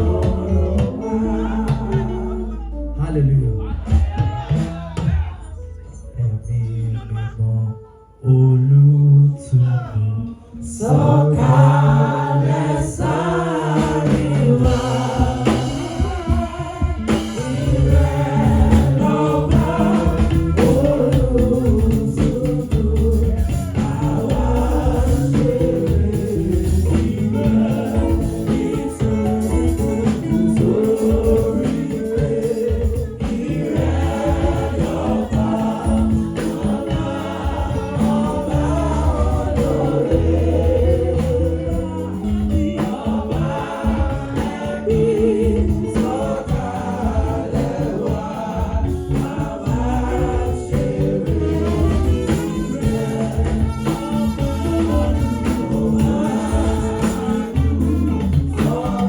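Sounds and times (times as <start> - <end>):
choir singing gospel music: 0.0 - 7.6, 8.2 - 59.0
instrumental backing: 0.0 - 59.0
steady bass beat: 12.9 - 59.0.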